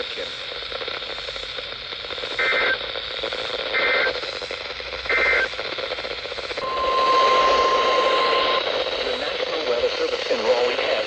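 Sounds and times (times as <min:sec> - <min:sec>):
radio hiss: 0:00.0 - 0:11.0
digital data tone bursts: 0:06.6 - 0:10.8.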